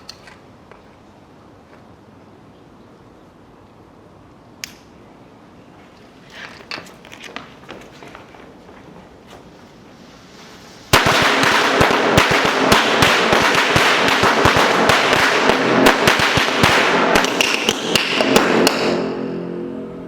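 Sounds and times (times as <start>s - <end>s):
firecrackers cracking and banging: 10.9s - 19.0s.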